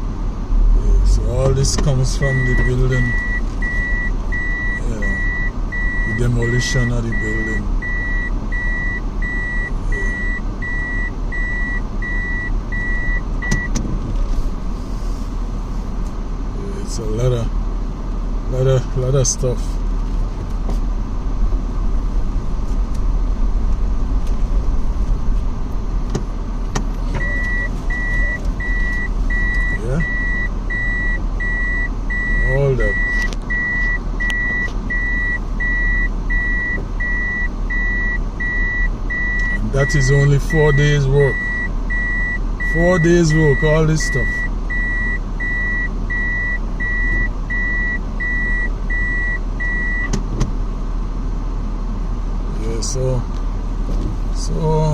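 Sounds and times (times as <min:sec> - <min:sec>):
low engine rumble: 0:00.0 - 0:54.9
reversing alarm beeping: 0:02.1 - 0:13.7, 0:27.2 - 0:50.1.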